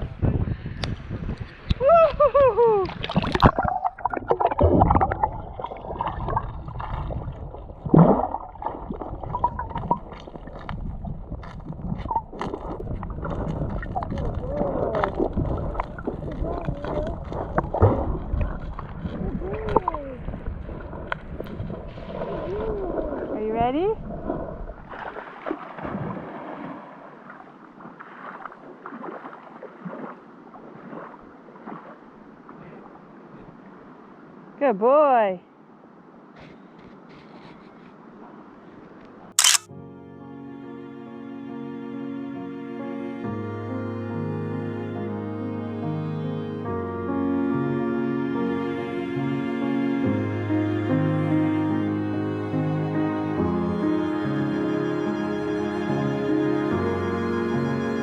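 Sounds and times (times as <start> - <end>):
water splashing from swimming: 1.4 - 33.0
loud water splash: 2.8 - 10.7, 11.9 - 19.2, 24.3 - 27.2.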